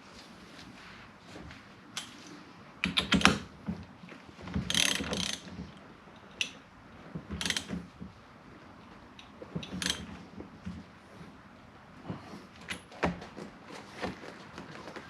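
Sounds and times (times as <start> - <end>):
hand ratchet clicking: 4.7 - 5.5, 7.4 - 7.9, 9.2 - 10.1.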